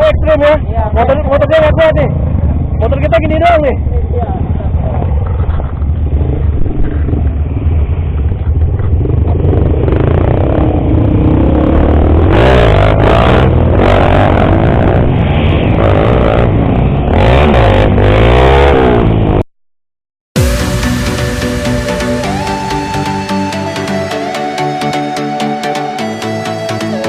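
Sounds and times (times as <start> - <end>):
motorcycle engines revving: 0.0 - 19.4
steady low rumble: 20.4 - 24.3.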